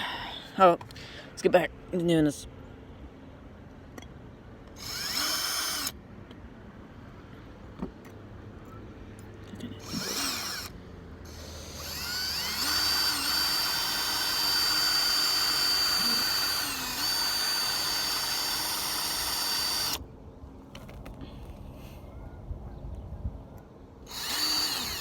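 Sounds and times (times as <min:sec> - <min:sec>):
small electric drill whining: 0:04.7 - 0:06.0, 0:09.8 - 0:20.0, 0:24.0 - 0:25.0.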